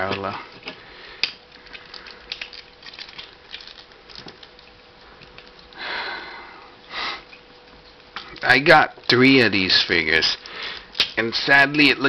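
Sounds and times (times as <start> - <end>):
soft hissing: 4.4 - 11.8.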